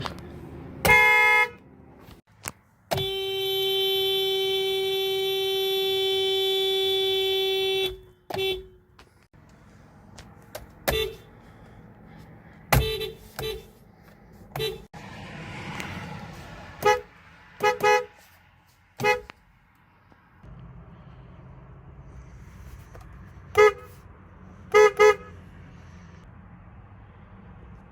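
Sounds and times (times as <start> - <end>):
car horn honking: 0.8 - 1.7, 2.9 - 8.9, 10.8 - 11.4, 12.7 - 13.8, 14.5 - 14.9, 16.8 - 18.3, 19.0 - 19.4, 23.5 - 24.0, 24.7 - 25.5.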